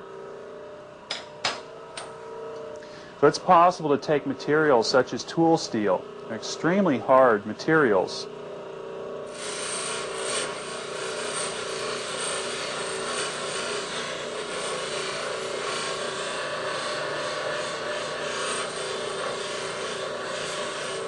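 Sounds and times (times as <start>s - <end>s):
motor hum: 0.0s - 21.0s
steel grinding on abrasive wheel: 9.3s - 21.0s.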